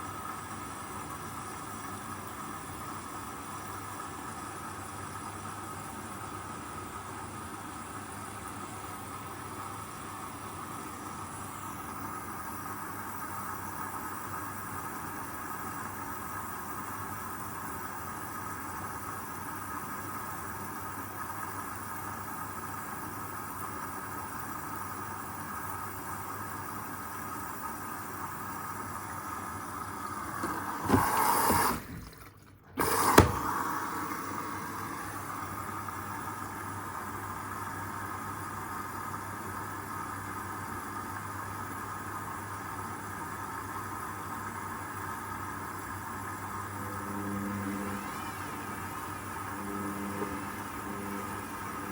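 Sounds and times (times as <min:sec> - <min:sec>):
washing machine humming: 0:00.0 - 0:51.9.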